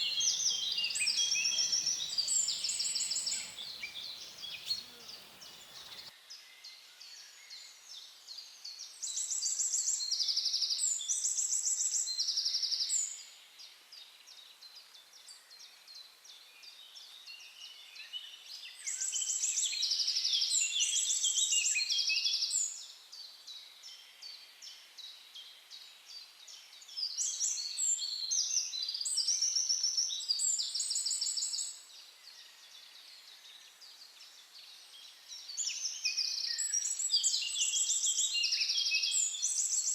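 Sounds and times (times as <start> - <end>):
faint birds chirping: 0.0 - 6.1
songbird rapid high trills: 0.0 - 6.1.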